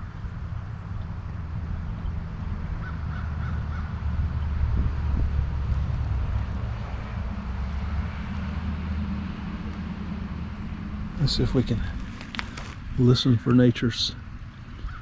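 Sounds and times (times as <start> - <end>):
crow cawing: 2.8 - 4.0, 14.8 - 15.0.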